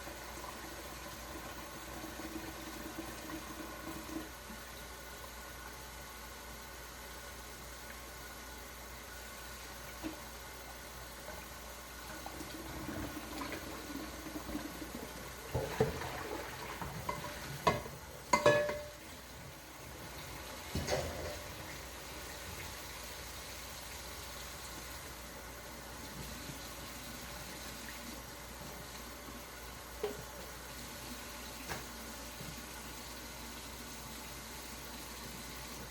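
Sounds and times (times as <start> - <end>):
faint steady hiss: 0.0 - 35.9
kitchenware clattering: 17.0 - 19.0, 20.7 - 21.6.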